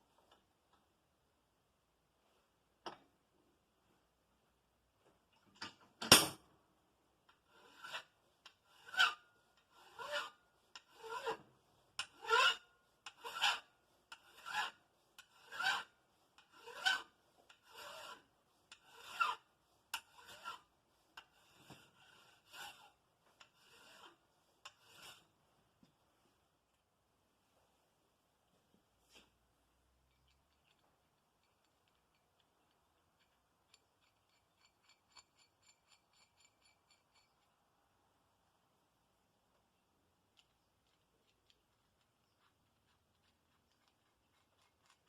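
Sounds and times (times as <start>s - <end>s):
hand file on metal: 7.5s - 11.4s, 12.0s - 25.3s, 33.2s - 37.5s.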